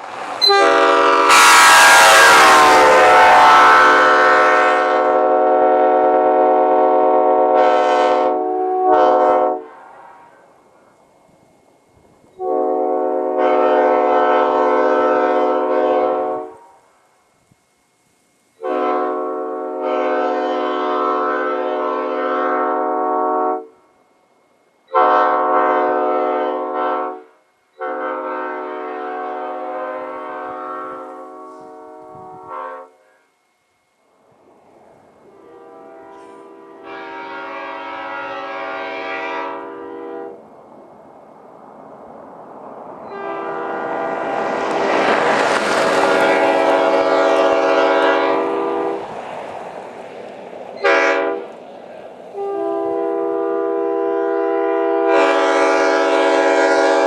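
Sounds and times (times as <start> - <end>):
locomotive air horn blasts: 0.4 - 10.6, 12.3 - 17.0, 18.6 - 24.0, 24.9 - 33.3, 35.2 - 40.4, 43.0 - 49.2, 50.8 - 51.6, 52.3 - 57.0.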